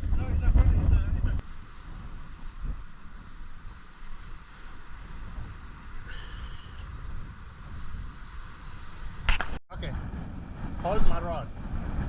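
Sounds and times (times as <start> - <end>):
wind buffeting microphone: 0.0 - 12.0
surf washing: 0.6 - 9.6.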